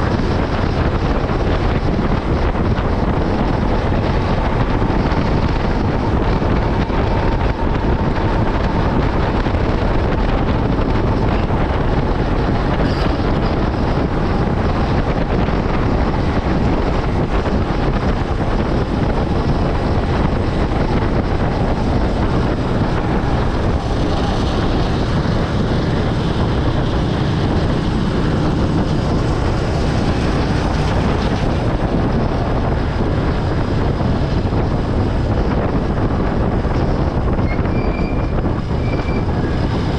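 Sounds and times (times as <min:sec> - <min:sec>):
motorcycle engine running: 0:00.0 - 0:37.3
wind noise on microphone: 0:00.0 - 0:39.9.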